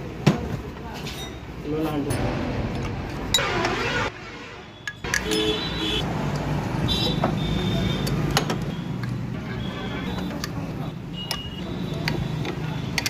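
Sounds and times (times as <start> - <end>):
metal tools clinking on engine parts: 4.9 - 5.6.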